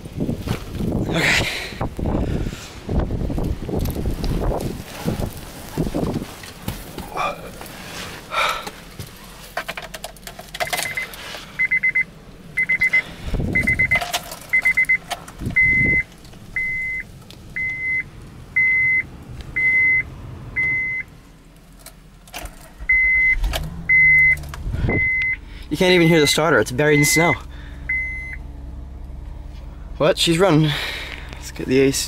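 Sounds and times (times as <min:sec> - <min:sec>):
car warning chime beeping: 0:10.6 - 0:21.1, 0:22.8 - 0:28.4
keys jingling: 0:13.6 - 0:15.4.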